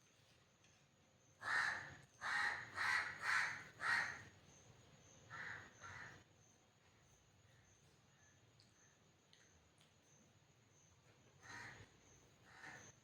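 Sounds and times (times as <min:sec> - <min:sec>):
crow cawing: 0:01.5 - 0:04.1, 0:05.3 - 0:06.2.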